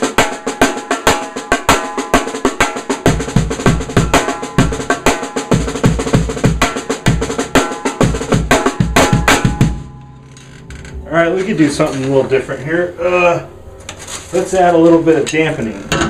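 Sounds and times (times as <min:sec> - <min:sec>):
snare drum strokes and rolls: 0:00.0 - 0:09.8
kick drum thumps: 0:02.6 - 0:09.9.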